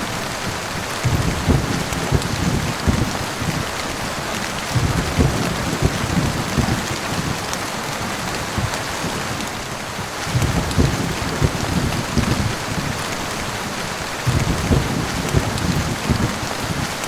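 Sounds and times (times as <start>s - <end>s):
heavy rain hissing: 0.0s - 17.0s
low thuds: 1.0s - 3.6s, 4.7s - 7.3s, 10.3s - 12.9s, 14.2s - 16.4s.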